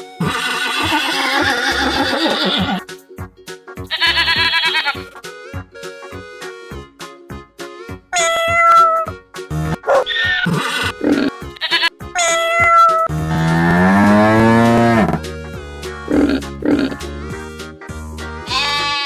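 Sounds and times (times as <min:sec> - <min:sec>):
children's background melody: 0:00.0 - 0:19.0
cow mooing: 0:13.1 - 0:15.2.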